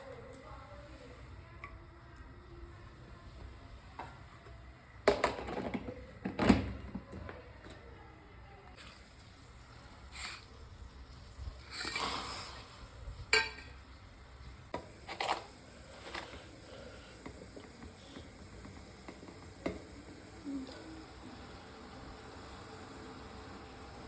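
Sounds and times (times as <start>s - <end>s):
utensils clinking against pot: 13.3s - 13.8s.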